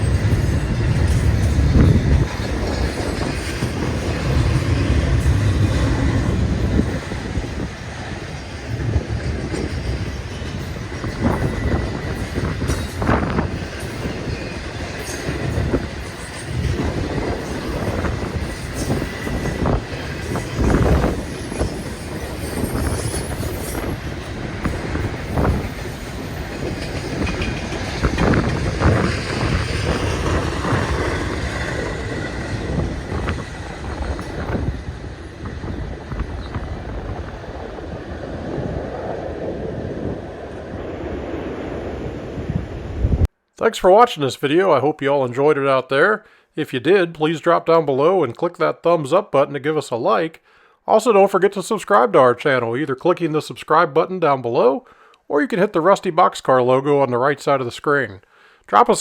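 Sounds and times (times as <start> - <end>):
freight train rumbling past: 0.0 - 43.3.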